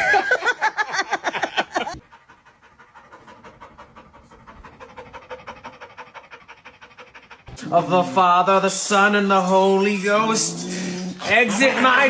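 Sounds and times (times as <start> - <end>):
dog panting: 0.7 - 9.1.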